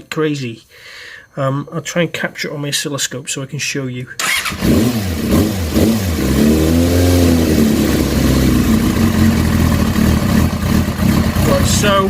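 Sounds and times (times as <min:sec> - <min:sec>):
motorcycle engine idling roughly: 0:07.8 - 0:12.0.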